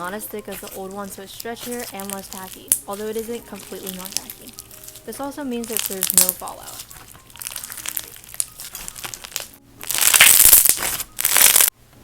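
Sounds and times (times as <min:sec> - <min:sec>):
slime crackling: 0:00.0 - 0:11.7.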